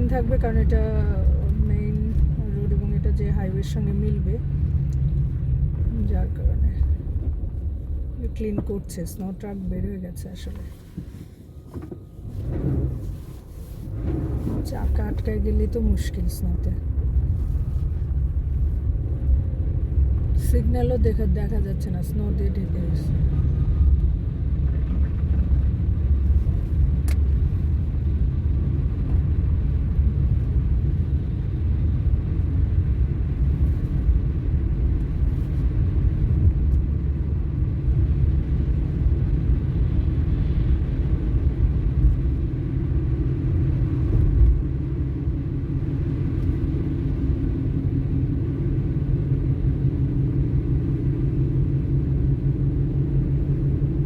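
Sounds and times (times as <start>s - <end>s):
car road noise rumble: 0.0s - 54.0s.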